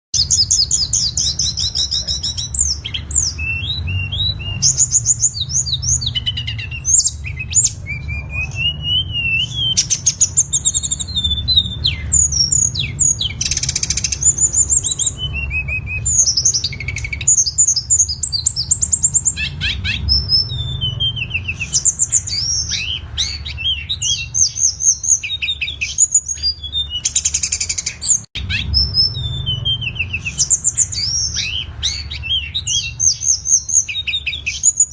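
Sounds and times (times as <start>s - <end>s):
songbird singing: 0.2s - 34.9s.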